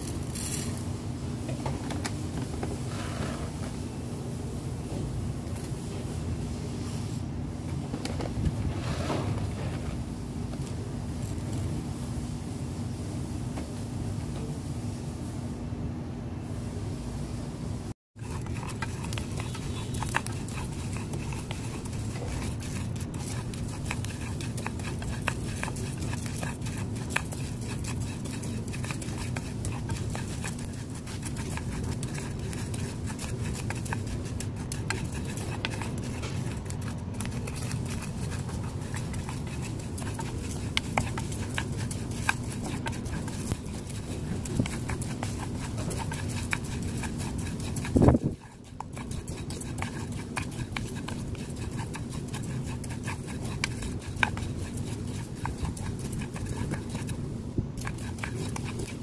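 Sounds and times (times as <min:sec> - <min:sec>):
chewing and crunching: 0:18.2 - 0:57.2, 0:57.8 - 0:59.0.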